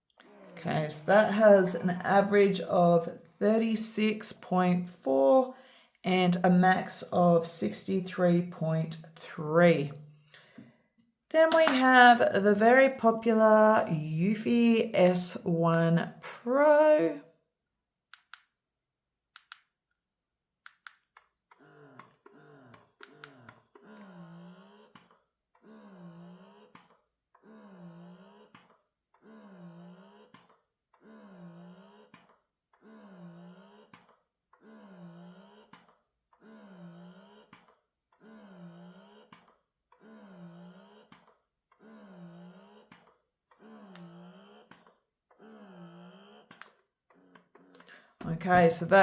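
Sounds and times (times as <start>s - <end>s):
sharp clicks: 19.4s - 19.7s.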